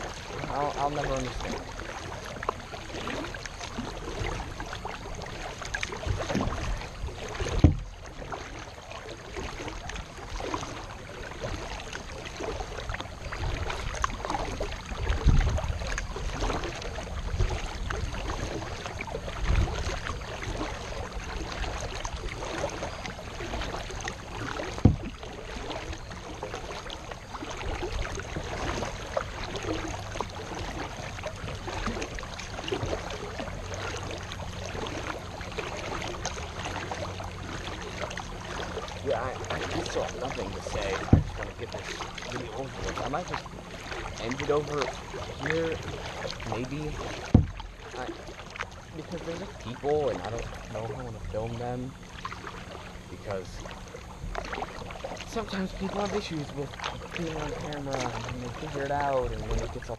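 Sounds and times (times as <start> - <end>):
paddle strokes splashing: 0.0 - 59.9
sharp knocks: 24.8 - 25.1, 41.0 - 41.4, 47.3 - 47.6.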